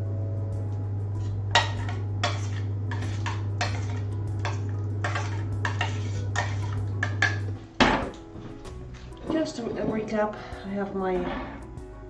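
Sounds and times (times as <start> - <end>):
steady low hum: 0.0 - 12.0
plates and cutlery clinking: 1.2 - 10.2.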